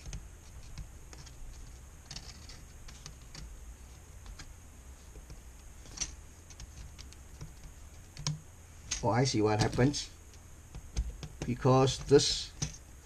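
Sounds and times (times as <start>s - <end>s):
small clicks and taps: 5.2s - 9.0s, 9.6s - 12.8s.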